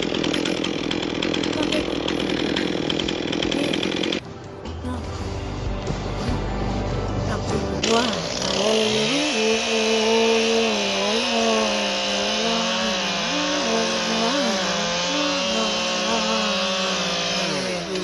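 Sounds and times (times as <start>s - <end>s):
chainsaw cutting wood: 0.0s - 4.2s, 7.8s - 18.0s.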